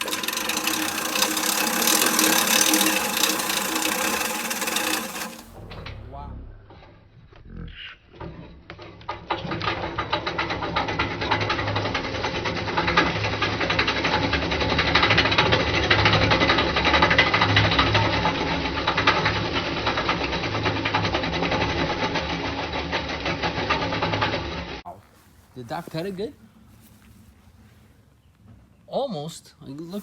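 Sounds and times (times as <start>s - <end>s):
reel lawn mower clattering: 0.0s - 5.6s, 9.3s - 24.6s.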